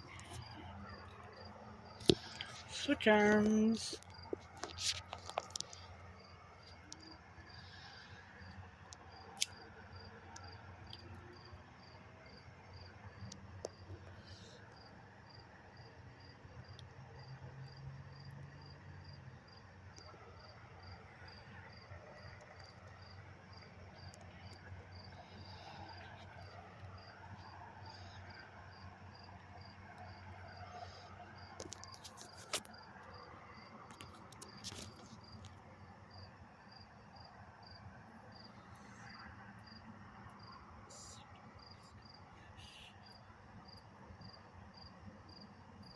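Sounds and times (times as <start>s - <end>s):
cricket chirping: 3.2s - 45.9s.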